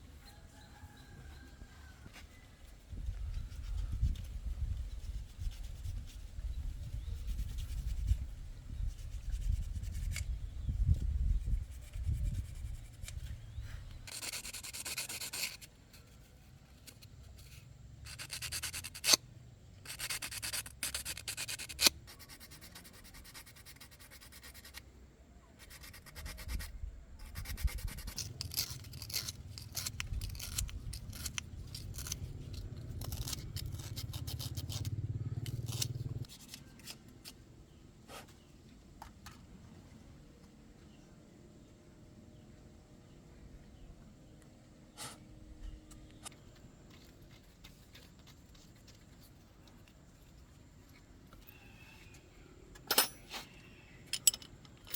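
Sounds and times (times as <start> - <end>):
scraping and rubbing of parts: 14.0 - 19.2, 27.2 - 37.5, 52.8 - 54.9.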